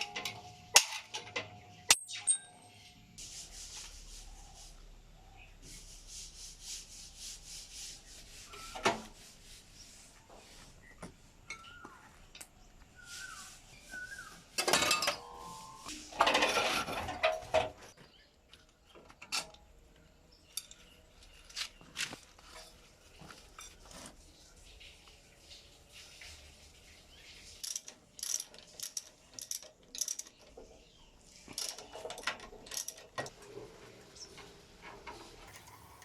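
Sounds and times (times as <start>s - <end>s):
rubbing strokes on metal: 2.8s - 11.0s, 13.0s - 16.7s, 22.5s - 27.8s
hissing bursts: 35.5s - 36.0s.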